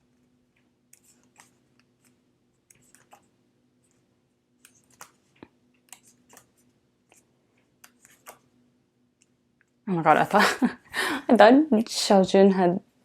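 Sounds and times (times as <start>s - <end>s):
low steady hum: 0.0s - 13.0s
cards clicking and tapping: 4.6s - 8.5s.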